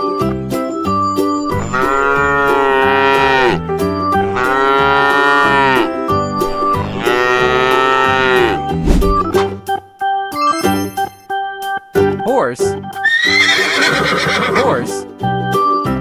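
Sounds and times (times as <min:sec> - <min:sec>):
light background music: 0:00.0 - 0:16.0
cow mooing: 0:01.5 - 0:05.9, 0:06.7 - 0:08.7.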